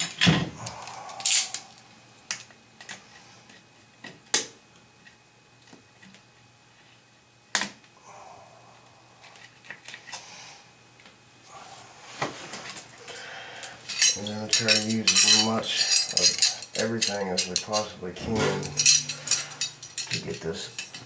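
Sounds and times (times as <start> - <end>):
metal bolts and hand tools clinking: 13.6 - 21.0.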